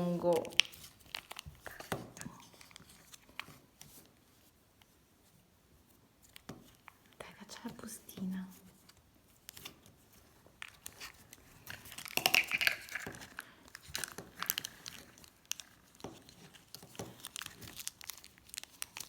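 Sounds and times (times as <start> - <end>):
plastic packet crinkling: 0.0 - 3.5, 10.4 - 19.0.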